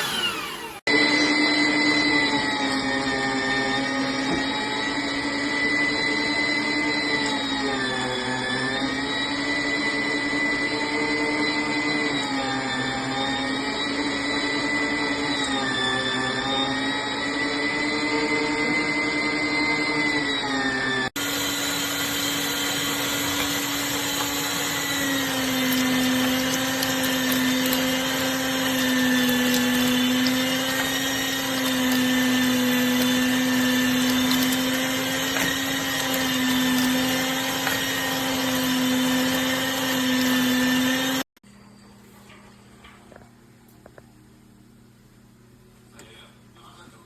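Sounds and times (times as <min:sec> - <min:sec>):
meat grinder motor whining: 0:00.0 - 0:41.3.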